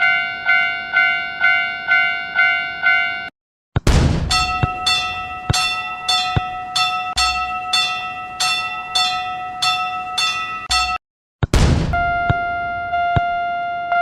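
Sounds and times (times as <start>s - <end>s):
railroad crossing bell ringing: 0.0s - 3.3s, 4.3s - 11.0s.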